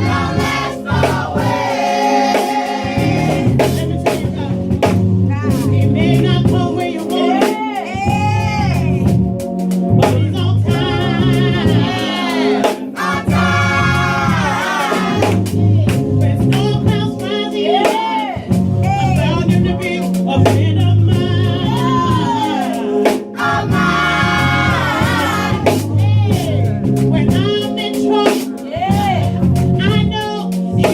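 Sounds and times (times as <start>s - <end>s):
drum hits: 0.0s - 5.8s, 11.6s - 17.0s, 23.1s - 27.6s
band playing: 0.0s - 30.9s
bass notes: 0.0s - 30.9s
group singing gospel music: 0.0s - 30.9s.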